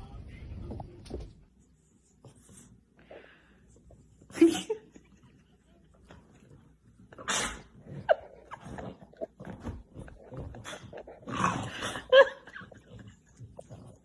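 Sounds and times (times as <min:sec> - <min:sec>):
dog growling: 0:07.0 - 0:14.0.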